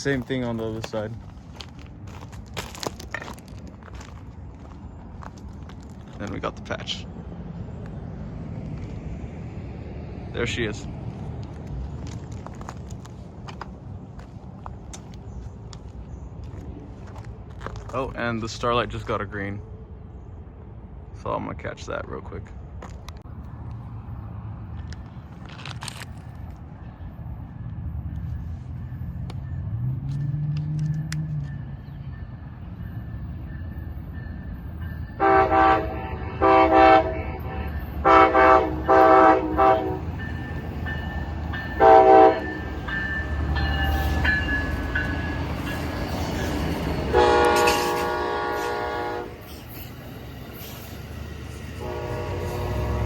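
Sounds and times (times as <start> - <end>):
train rumbling past: 0.0 - 53.0
locomotive air horn blasts: 35.2 - 40.2, 41.8 - 42.6, 47.1 - 49.4, 51.8 - 53.0.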